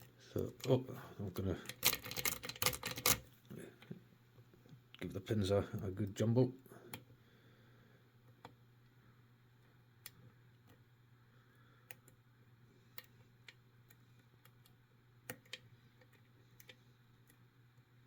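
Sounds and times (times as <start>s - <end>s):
low steady hum: 0.0s - 18.0s
lock pick clicking: 1.7s - 3.2s.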